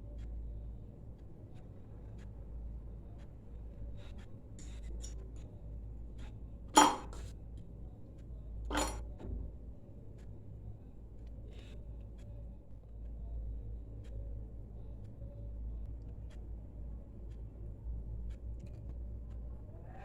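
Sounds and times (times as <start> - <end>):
kitchenware sharp clinks: 6.8 - 7.2, 8.7 - 9.0.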